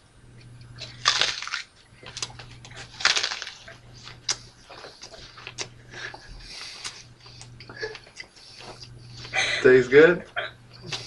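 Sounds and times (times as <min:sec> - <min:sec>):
wet crunches biting onion: 0:00.8 - 0:05.7
crisp chewing clicks: 0:00.8 - 0:05.8.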